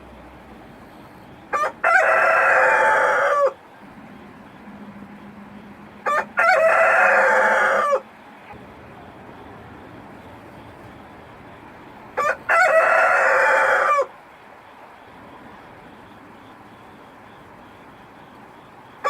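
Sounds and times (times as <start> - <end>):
rooster crowing: 1.5 - 3.7, 6.0 - 8.6, 12.1 - 14.2.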